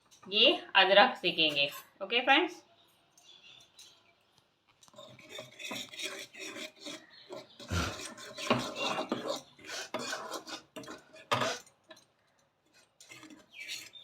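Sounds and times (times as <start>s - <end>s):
spatula scraping flour in pan: 4.9s - 11.7s, 12.7s - 14.0s.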